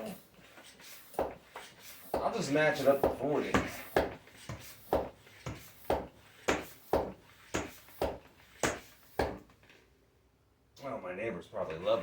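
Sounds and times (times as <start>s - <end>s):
bicycle tire pump strokes: 0.0s - 9.6s.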